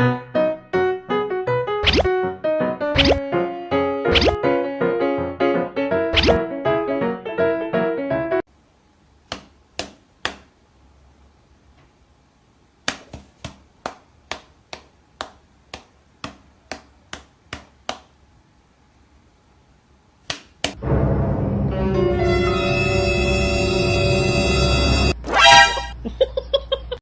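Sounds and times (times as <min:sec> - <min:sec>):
music: 0:00.0 - 0:08.4, 0:20.8 - 0:26.0.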